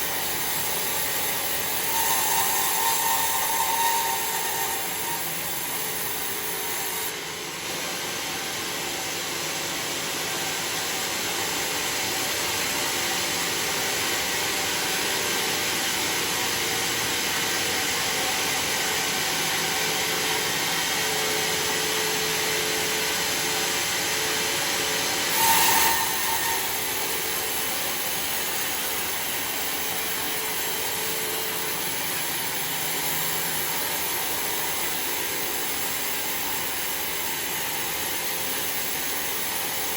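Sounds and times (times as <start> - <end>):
saw cutting through log: 0.0 - 7.3, 18.8 - 39.9.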